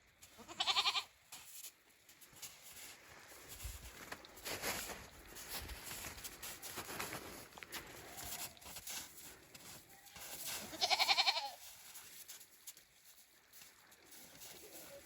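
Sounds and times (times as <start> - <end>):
goat bleating: 0.4 - 1.1, 9.9 - 11.7
soft rustling: 1.3 - 15.0.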